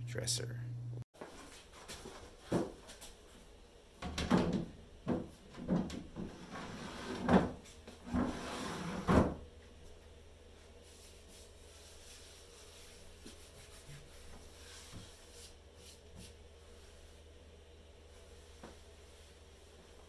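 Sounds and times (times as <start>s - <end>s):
wooden drawers sliding and knocking shut: 4.0s - 9.4s.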